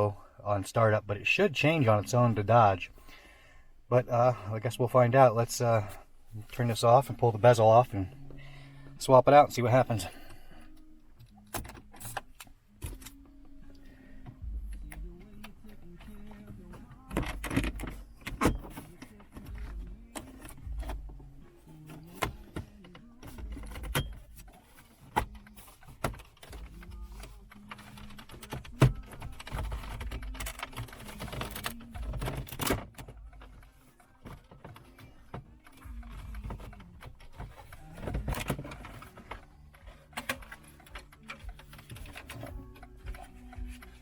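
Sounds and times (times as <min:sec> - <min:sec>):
rustling and scraping: 0:13.9 - 0:44.0.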